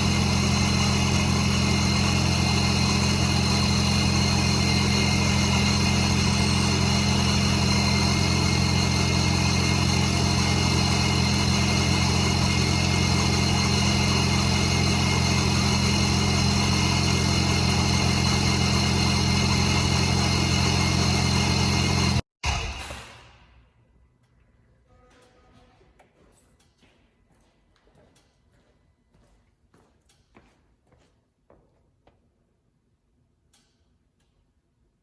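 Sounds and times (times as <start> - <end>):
car engine idling: 0.0 - 22.6.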